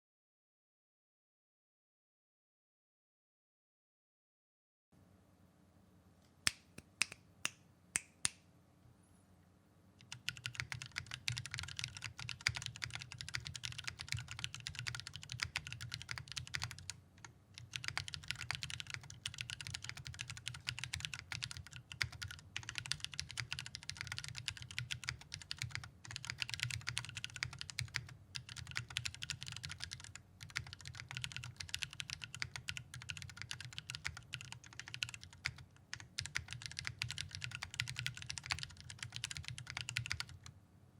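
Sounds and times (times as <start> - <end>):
mechanical keyboard typing: 10.0 - 40.5.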